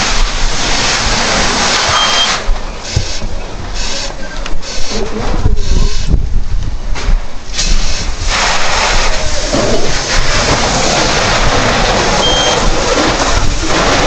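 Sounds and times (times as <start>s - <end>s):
fire hoses spraying water: 0.0s - 6.4s, 7.0s - 14.0s
fire engine pump rumble: 0.0s - 14.0s
short high beep: 1.9s - 2.4s, 12.2s - 12.6s.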